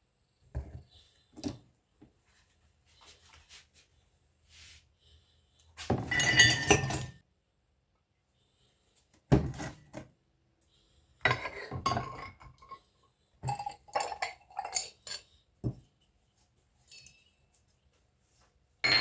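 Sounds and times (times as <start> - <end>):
dishes and cutlery clinking: 5.8 - 7.2, 11.3 - 12.8, 13.4 - 15.8.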